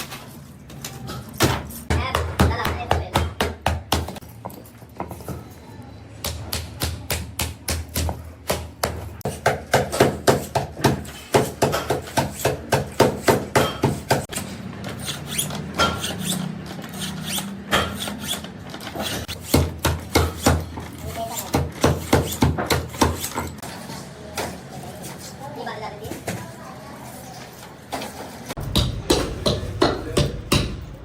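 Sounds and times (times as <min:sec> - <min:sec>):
hammer strikes: 0:06.2 - 0:14.4, 0:19.2 - 0:20.8, 0:28.6 - 0:31.0.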